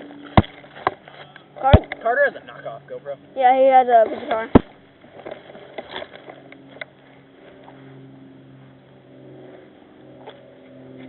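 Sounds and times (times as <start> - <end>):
low engine-like hum: 0.0 - 11.0.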